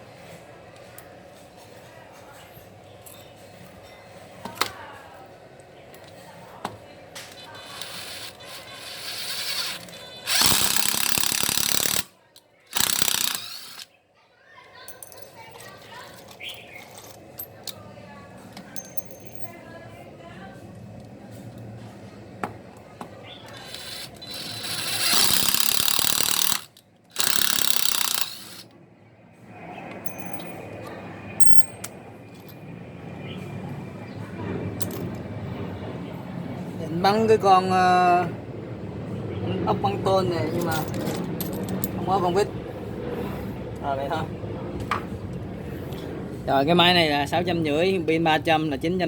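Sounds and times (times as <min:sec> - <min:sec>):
cordless drill motor running: 0:07.4 - 0:12.1, 0:12.7 - 0:13.9, 0:23.6 - 0:28.6.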